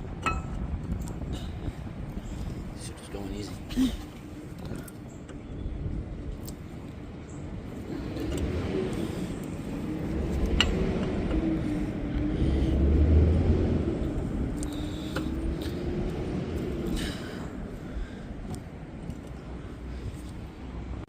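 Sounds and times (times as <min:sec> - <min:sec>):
wind rumbling on microphone: 0:00.0 - 0:21.0
vehicle engine passing: 0:07.8 - 0:18.2.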